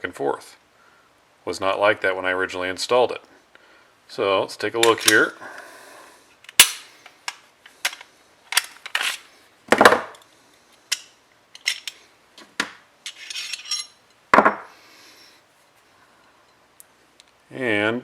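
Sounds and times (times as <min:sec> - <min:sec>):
pistol parts clicking and clacking: 0:04.8 - 0:05.3, 0:06.4 - 0:09.3, 0:10.9 - 0:12.0
metal parts rattling: 0:10.9 - 0:12.0, 0:13.0 - 0:14.0.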